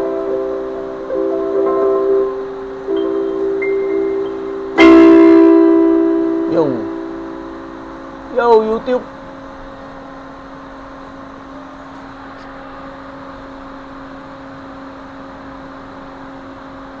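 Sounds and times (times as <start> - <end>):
constant low tone: 0.0 - 9.0
mechanical hum and hiss: 0.0 - 17.0.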